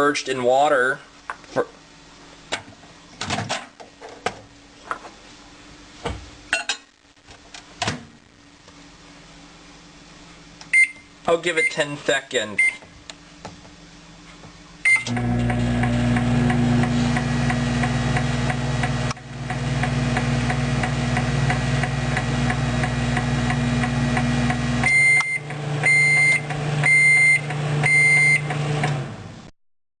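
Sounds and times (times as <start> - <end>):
microwave oven beeps: 10.7 - 11.8, 12.6 - 12.8, 14.8 - 18.6, 23.4 - 28.6
microwave oven humming: 13.1 - 29.5.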